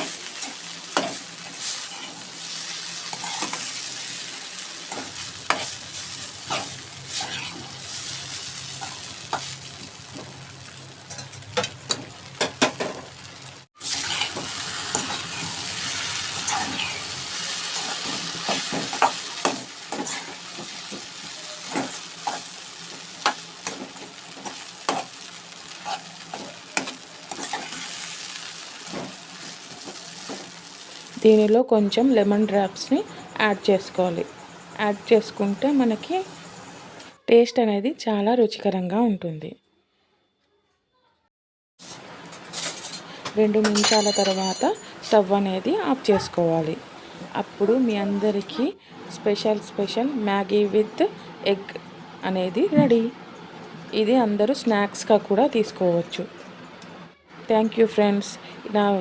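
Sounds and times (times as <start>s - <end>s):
spatula scraping a pan: 0.0s - 3.8s, 4.9s - 8.1s, 13.8s - 22.5s, 24.4s - 28.2s
noodles sizzling in a pan: 0.0s - 31.5s, 34.3s - 37.2s.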